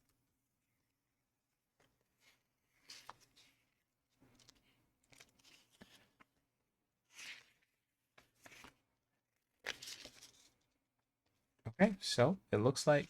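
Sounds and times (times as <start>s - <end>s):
paper pages turning: 1.8s - 6.4s, 7.0s - 12.0s.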